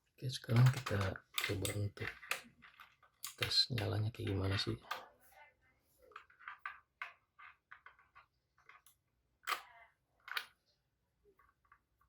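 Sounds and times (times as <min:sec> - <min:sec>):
mechanical keyboard clicks and knocks: 0:00.5 - 0:03.6.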